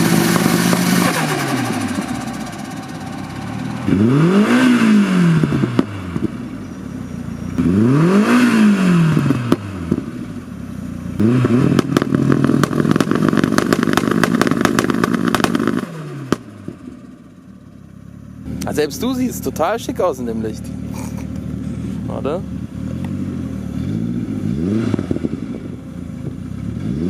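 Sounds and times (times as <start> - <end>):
exhaust pops and crackles: 0.0 - 4.6, 5.4 - 6.6, 9.1 - 10.3, 11.2 - 17.2
car engine revving: 0.0 - 27.0.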